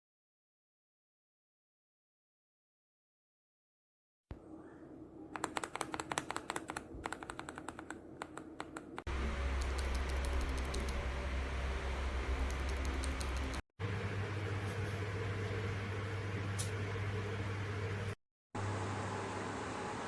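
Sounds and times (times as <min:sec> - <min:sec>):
mechanical keyboard key clicks: 0:05.3 - 0:08.8
steady low hum: 0:06.9 - 0:20.0.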